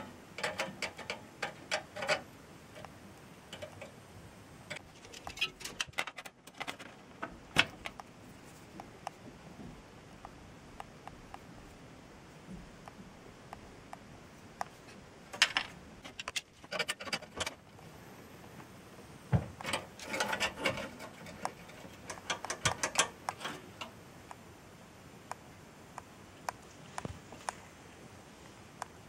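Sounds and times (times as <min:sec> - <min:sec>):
small hard parts clicking and clattering: 0:00.0 - 0:02.9, 0:04.7 - 0:08.0, 0:15.3 - 0:17.7, 0:19.6 - 0:24.0.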